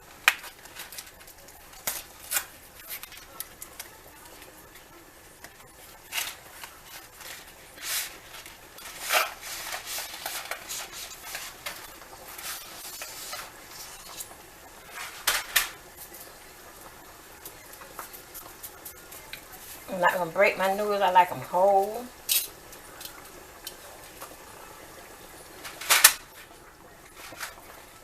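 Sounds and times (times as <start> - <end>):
spaghetti clattering into pot: 25.6 - 26.5.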